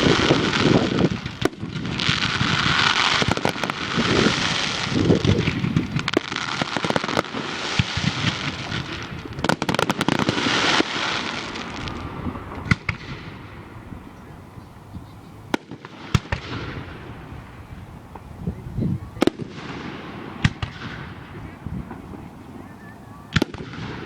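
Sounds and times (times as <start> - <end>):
fireworks bangs: 0.0 - 24.0
fireworks crackling and popping: 0.0 - 24.0.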